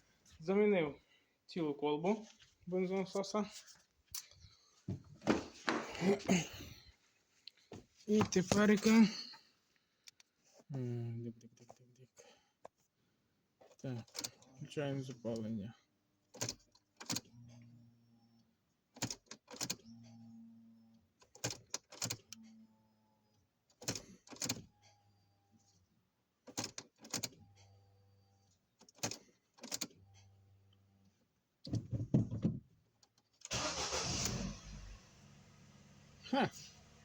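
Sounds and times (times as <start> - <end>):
car engine cranking and idling: 33.4 - 37.0.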